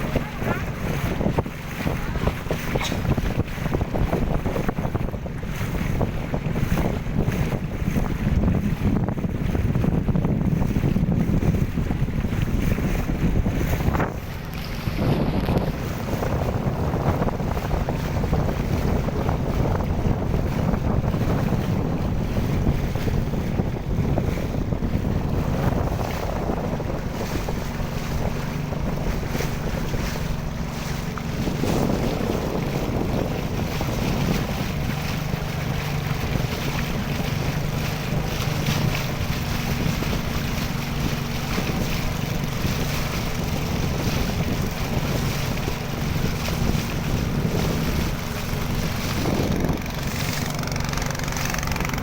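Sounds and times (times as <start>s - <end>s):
boat engine running: 0.0s - 52.0s
wind buffeting microphone: 0.0s - 52.0s.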